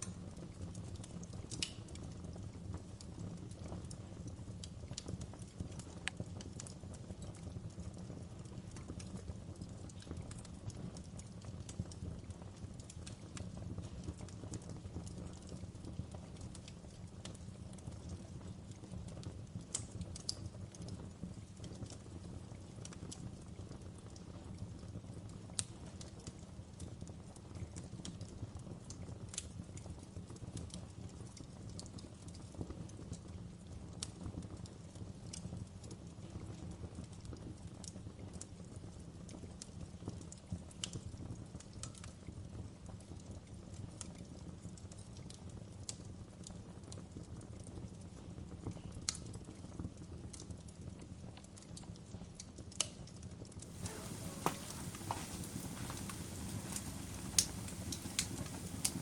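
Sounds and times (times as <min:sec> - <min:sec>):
campfire crackling and popping: 0:00.0 - 0:38.8, 0:53.7 - 0:59.0
fire hissing: 0:53.7 - 0:59.0
low steady rumble: 0:53.8 - 0:59.0.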